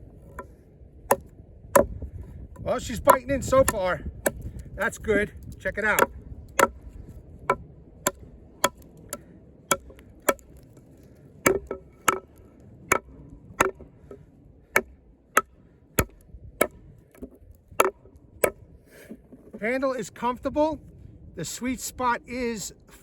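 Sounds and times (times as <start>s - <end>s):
knife chopping into wood: 1.1s - 2.0s, 2.6s - 4.5s, 6.0s - 6.8s, 7.5s - 10.6s, 11.4s - 12.3s, 12.9s - 13.8s, 14.8s - 19.5s.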